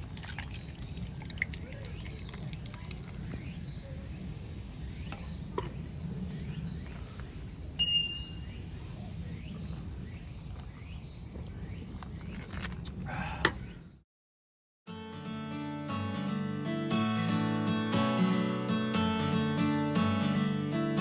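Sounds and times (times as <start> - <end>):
crickets trilling: 0.0 - 14.0
sharp clink: 7.8 - 8.4.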